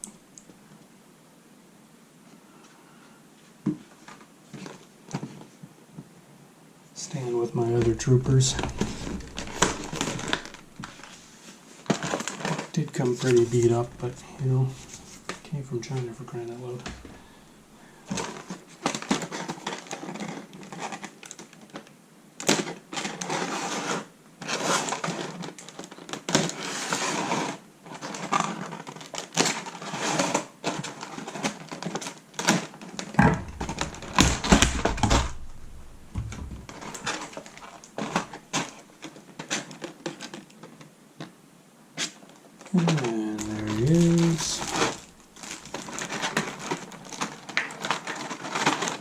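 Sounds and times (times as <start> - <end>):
deep bumps: 7.6 - 11.2, 13.2 - 17.9, 33.2 - 38.3, 43.4 - 46.4
packaging clicks and rustles: 7.8 - 27.0, 27.8 - 41.3, 42.0 - 49.0.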